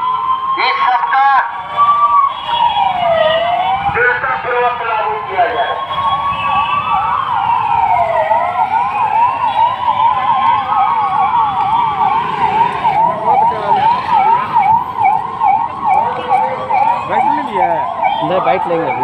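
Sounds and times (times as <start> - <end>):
police siren wailing: 0.0 - 19.0
police siren yelping: 0.0 - 19.0.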